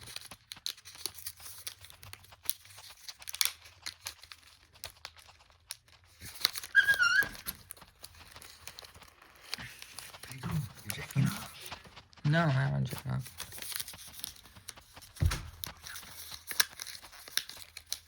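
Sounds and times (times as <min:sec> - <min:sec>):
plastic packaging crinkling: 0:00.0 - 0:18.0
high warbling squeak: 0:06.7 - 0:07.6.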